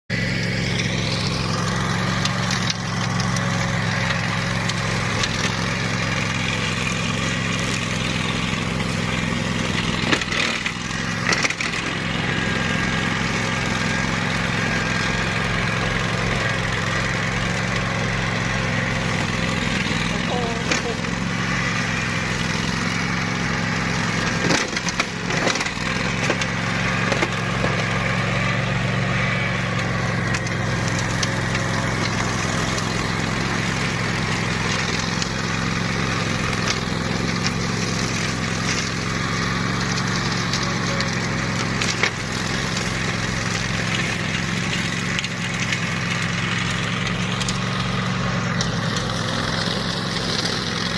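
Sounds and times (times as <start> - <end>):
mower engine running under load: 0.1 - 50.9
blades chopping vegetation: 1.1 - 28.7, 29.3 - 50.9
stems snapping and cracking: 24.4 - 26.5.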